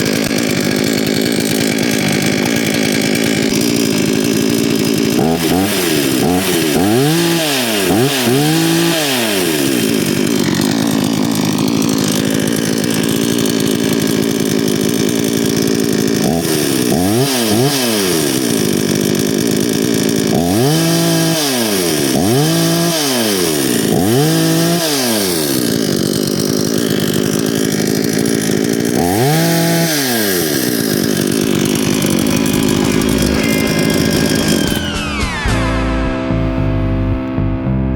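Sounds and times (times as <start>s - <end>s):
chainsaw revving: 0.0s - 37.5s.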